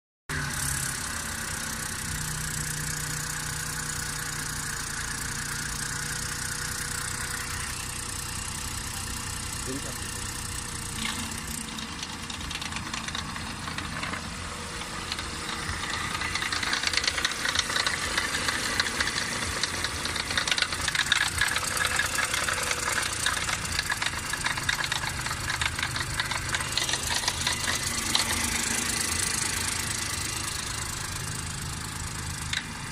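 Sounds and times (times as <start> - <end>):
car engine running: 0.3 - 32.9
fast dense ticking: 7.0 - 32.7.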